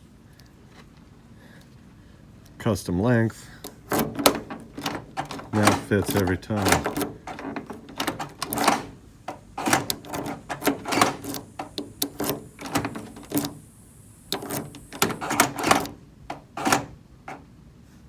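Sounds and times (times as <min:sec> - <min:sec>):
key clicking and rattling: 0:03.6 - 0:17.5.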